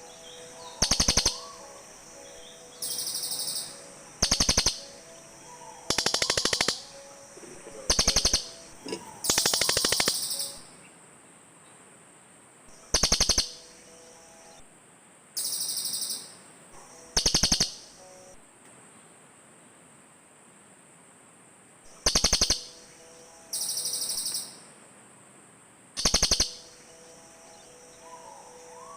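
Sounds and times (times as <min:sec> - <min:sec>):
birds buzzy trills: 0:00.0 - 0:10.9, 0:12.7 - 0:14.7, 0:15.4 - 0:18.4, 0:21.9 - 0:24.7, 0:26.0 - 0:28.9.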